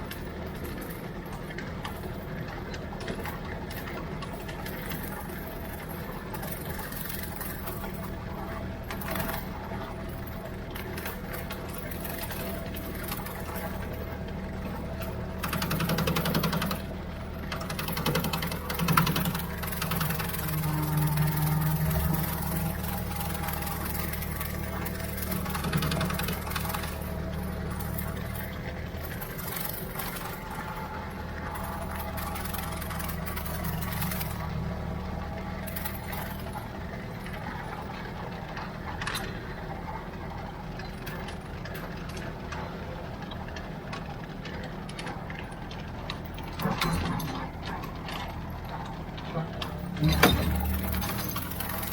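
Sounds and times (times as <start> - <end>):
mower rattling and clicking: 0.0 - 51.9
tractor engine under load: 0.0 - 51.9.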